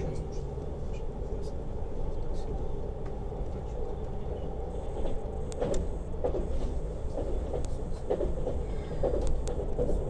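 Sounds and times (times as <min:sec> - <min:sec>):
train low rumble: 0:00.0 - 0:10.0
train wheels clacking over rail joints: 0:05.0 - 0:10.0.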